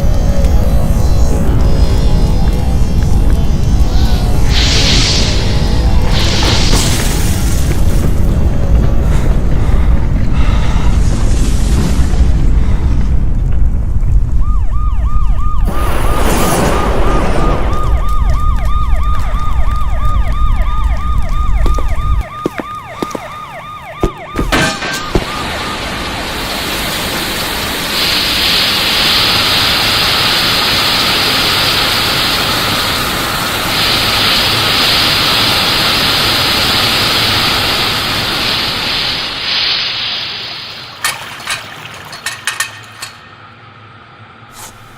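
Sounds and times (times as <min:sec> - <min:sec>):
deep rumble: 0:00.0 - 0:22.3
loud rushing noise: 0:04.0 - 0:08.7
warbling siren-like tone: 0:14.3 - 0:27.6.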